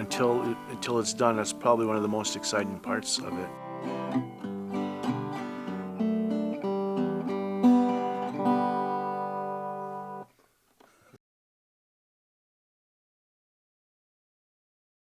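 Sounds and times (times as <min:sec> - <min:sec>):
fingerpicked acoustic guitar: 0:00.0 - 0:10.3.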